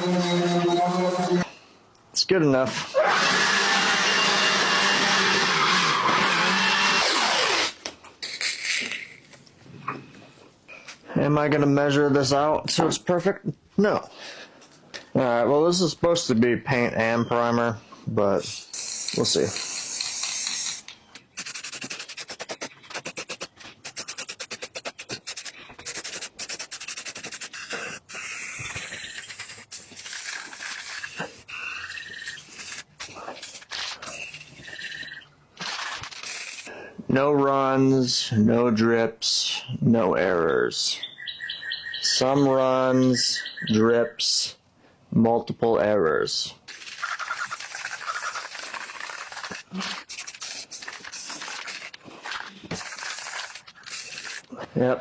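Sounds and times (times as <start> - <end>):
electric power tool running: 3.0 - 7.7
aerosol spray hissing: 18.5 - 34.5, 36.2 - 36.7, 46.7 - 51.9, 52.8 - 54.4.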